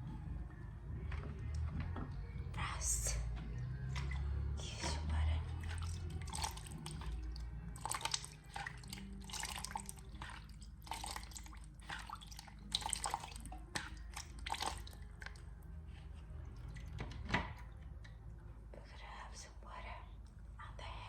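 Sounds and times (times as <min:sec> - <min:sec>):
low steady hum: 0:00.0 - 0:21.0
wet squishy sounds: 0:03.2 - 0:18.2.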